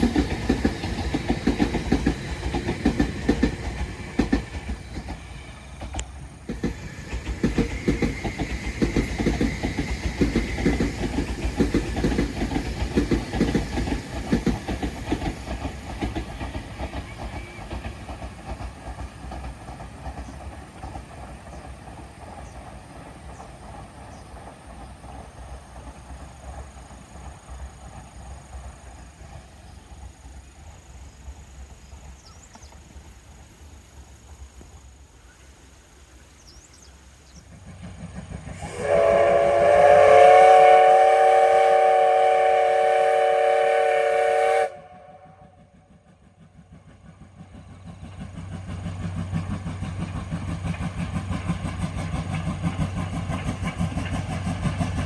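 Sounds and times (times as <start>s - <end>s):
low train rumble: 0.0s - 55.0s
steam locomotive whistle: 16.9s - 17.9s, 38.5s - 45.8s.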